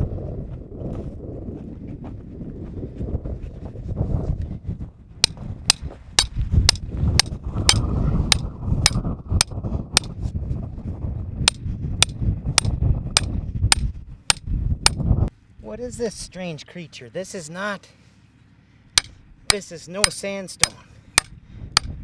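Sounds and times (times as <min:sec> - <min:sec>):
low rumble: 0:00.0 - 0:15.8
hammer striking metal: 0:05.2 - 0:10.1, 0:19.0 - 0:22.0.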